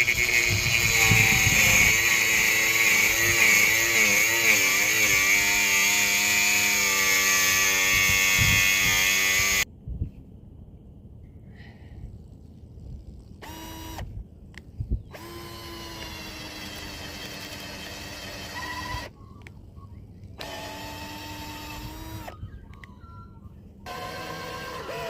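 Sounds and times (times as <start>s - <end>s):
power drill whining: 0.0s - 9.7s, 13.4s - 14.0s, 15.1s - 19.1s, 20.4s - 22.4s, 23.9s - 25.0s.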